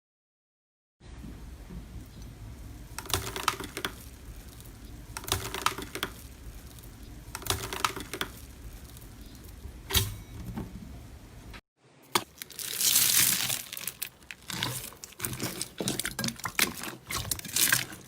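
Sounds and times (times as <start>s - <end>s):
slime crackling when squeezed: 12.1s - 18.0s.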